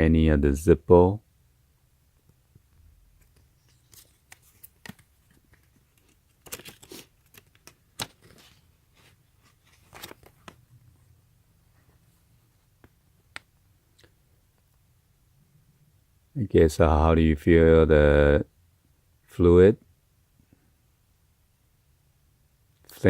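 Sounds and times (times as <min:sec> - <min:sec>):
paper booklet crinkling: 0:03.2 - 0:10.7.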